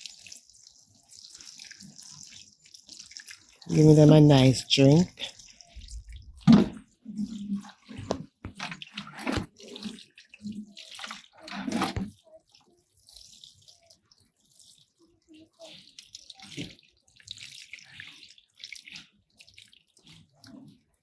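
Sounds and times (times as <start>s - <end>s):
water splashing onto soil and plants: 0.0s - 6.7s
water drips and trickles: 0.0s - 21.0s.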